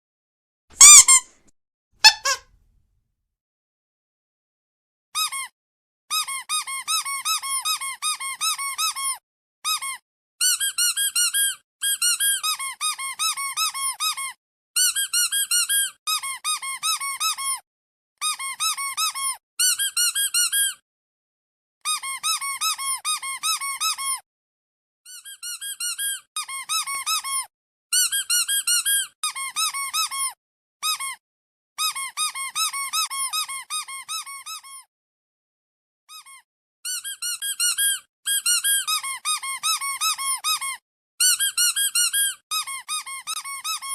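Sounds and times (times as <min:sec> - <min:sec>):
squeaky toy squeaking: 0:00.8 - 0:01.4, 0:02.0 - 0:02.5, 0:05.2 - 0:05.5, 0:06.1 - 0:17.6, 0:18.2 - 0:20.8, 0:21.8 - 0:24.2, 0:25.1 - 0:31.2, 0:31.8 - 0:34.9, 0:36.1 - 0:43.9.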